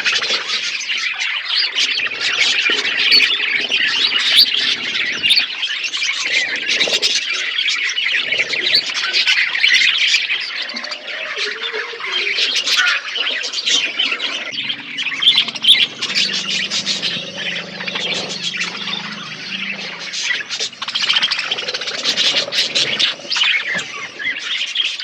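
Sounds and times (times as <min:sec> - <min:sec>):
budgerigars chattering and chirping: 0:12.2 - 0:25.0.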